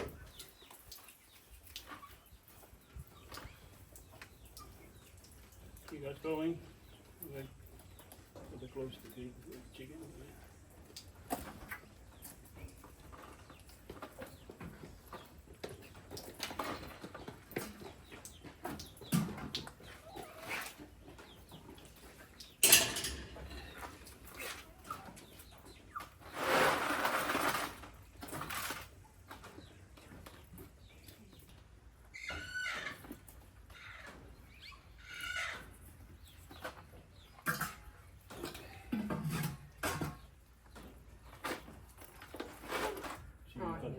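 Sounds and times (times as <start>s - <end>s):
rustling: 25.9s - 29.6s, 41.1s - 43.5s.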